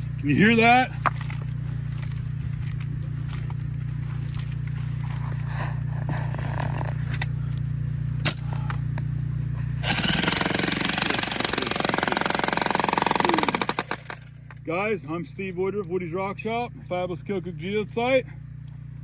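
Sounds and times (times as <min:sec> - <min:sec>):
low machine hum: 0:00.0 - 0:19.0
jackhammer hammering rock: 0:09.8 - 0:14.6.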